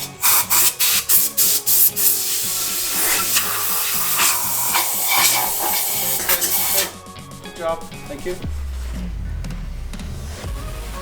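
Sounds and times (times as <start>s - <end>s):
rough hissing and rubbing noise: 0.0s - 7.0s
background music with bass line: 0.0s - 11.0s.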